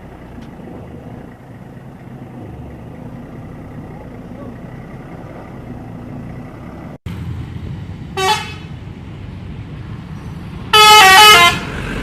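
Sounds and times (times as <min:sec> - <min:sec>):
bus diesel engine rumbling: 0:00.0 - 0:12.0
air horn blast: 0:08.2 - 0:08.7, 0:10.7 - 0:11.7.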